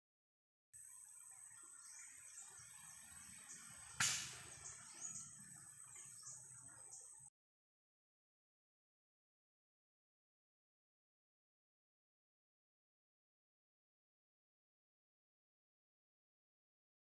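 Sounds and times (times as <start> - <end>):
birds chirping: 0.8 - 7.3
high insect drone: 0.8 - 7.3
sharp gunshot: 4.0 - 4.5.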